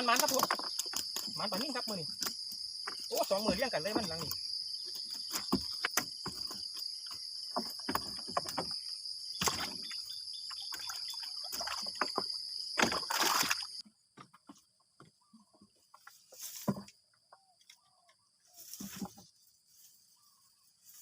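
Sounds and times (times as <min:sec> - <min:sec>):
water sloshing and splashing: 0:05.2 - 0:13.9.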